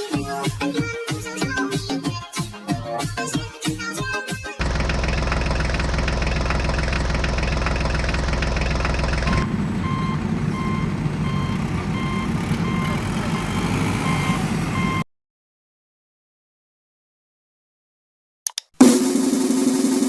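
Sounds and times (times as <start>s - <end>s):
diesel engine running: 4.6s - 15.0s
rumbling engine: 4.6s - 15.0s
reversing alarm beeping: 9.3s - 15.0s.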